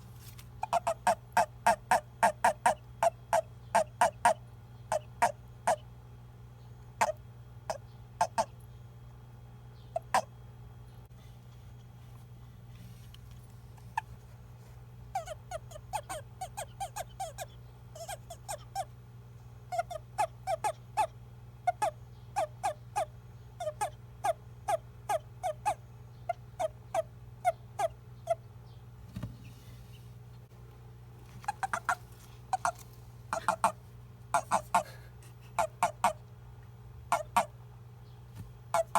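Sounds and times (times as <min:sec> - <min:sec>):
steady low hum: 0:00.0 - 0:38.9
toad chirping: 0:00.6 - 0:05.8, 0:07.0 - 0:08.5, 0:09.9 - 0:10.3, 0:15.1 - 0:18.9, 0:19.7 - 0:28.5, 0:31.4 - 0:36.2, 0:37.1 - 0:37.6.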